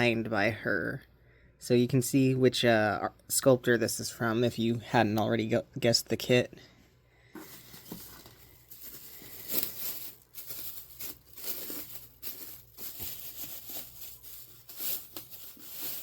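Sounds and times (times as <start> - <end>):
packaging rustling and crinkling: 7.4 - 16.0.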